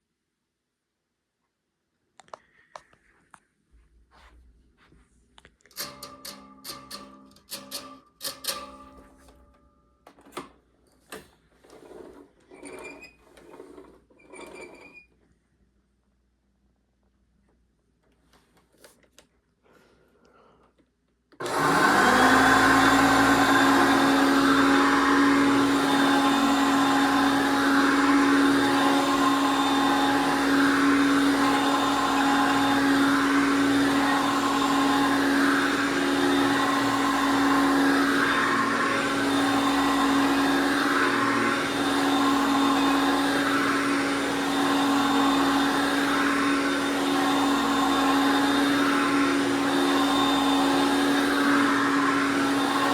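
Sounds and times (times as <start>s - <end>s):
vacuum cleaner motor whine: 21.4s - 52.9s.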